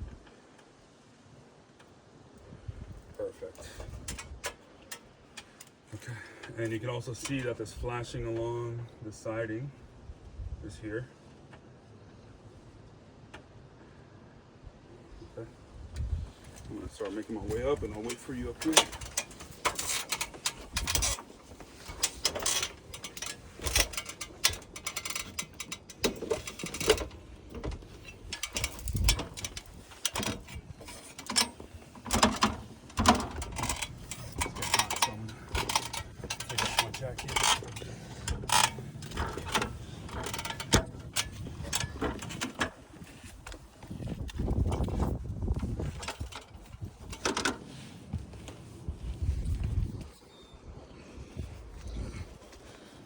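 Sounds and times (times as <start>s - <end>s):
knocks on metal ladder rungs: 18.0s - 42.8s.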